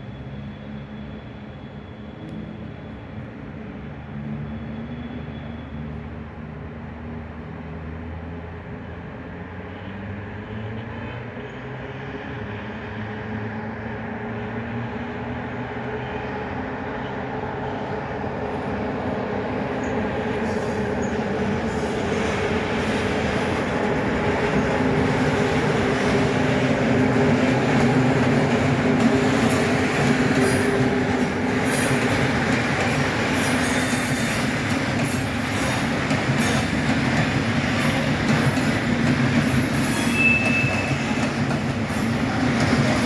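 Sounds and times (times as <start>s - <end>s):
train rail noise: 0.0s - 43.0s
electric locomotive hum: 11.5s - 43.0s.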